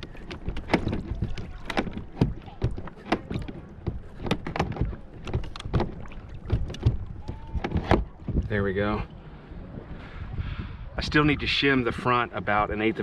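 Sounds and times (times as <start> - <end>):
plastic clicks clunks and knocks: 0.0 - 8.5.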